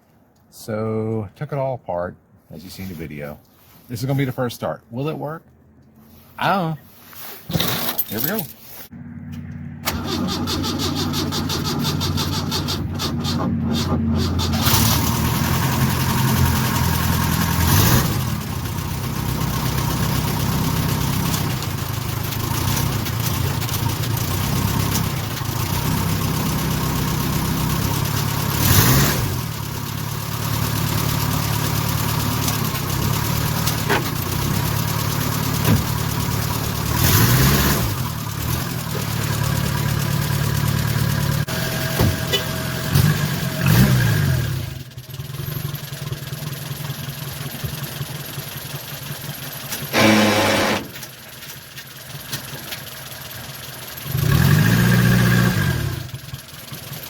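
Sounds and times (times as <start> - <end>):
car engine running and revving: 9.0 - 10.0, 11.6 - 51.2, 52.1 - 57.0.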